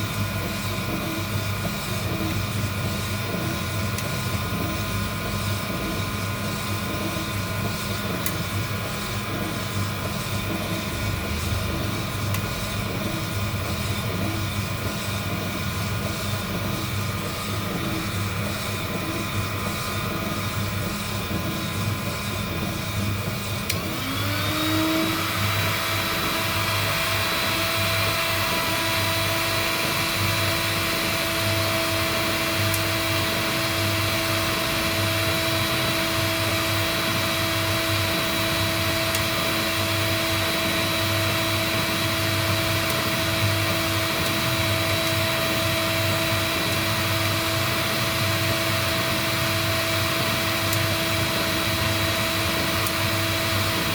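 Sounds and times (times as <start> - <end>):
motor whine: 0.0 - 53.9
whirring heat gun airflow: 0.0 - 53.9.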